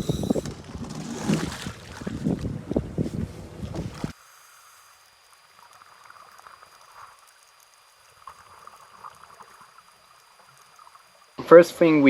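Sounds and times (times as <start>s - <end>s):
thin high whine: 0.0s - 12.0s
underwater bubbling and crackling: 5.0s - 11.4s.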